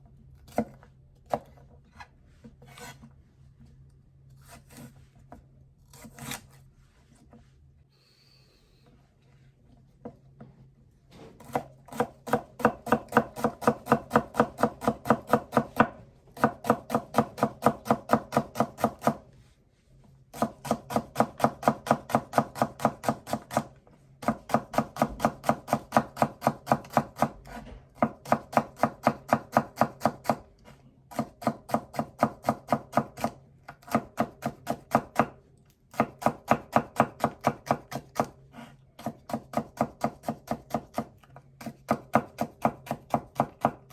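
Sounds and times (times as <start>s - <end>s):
knife chopping on cutting board: 11.4s - 19.2s, 20.4s - 30.5s, 31.1s - 43.9s.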